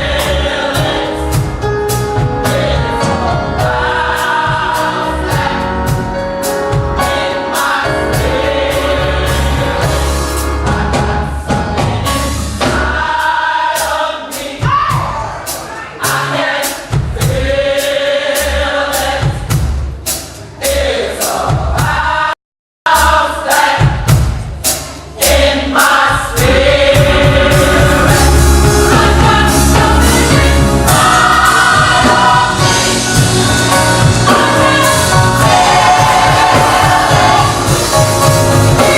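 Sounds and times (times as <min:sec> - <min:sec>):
band with steady beat: 0:00.0 - 0:38.9
gospel choir singing: 0:00.0 - 0:38.9.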